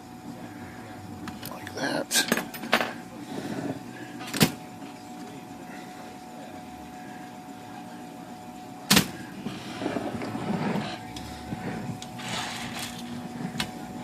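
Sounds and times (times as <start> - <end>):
typewriter motor humming: 11.6 - 13.6.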